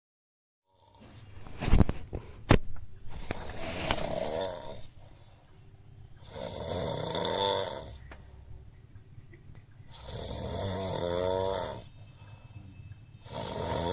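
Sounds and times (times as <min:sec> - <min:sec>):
person snoring: 0:03.4 - 0:04.9, 0:06.2 - 0:08.0, 0:09.9 - 0:11.9, 0:13.2 - 0:13.9.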